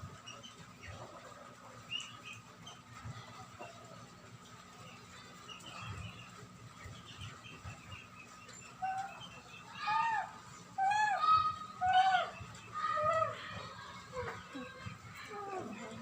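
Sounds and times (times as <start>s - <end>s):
faint high chirping: 1.8s - 16.0s
high arching animal cries: 8.8s - 13.5s.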